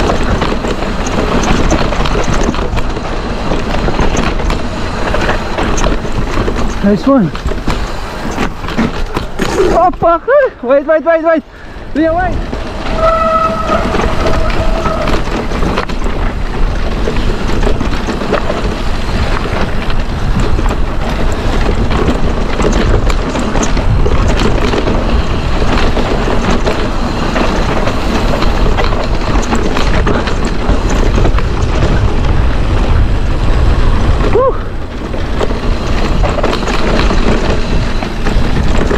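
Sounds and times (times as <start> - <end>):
mountain bike rattling over rocks: 0.0 - 38.9
wind rumbling on microphone: 0.0 - 38.9
steady high squeal: 12.6 - 15.7.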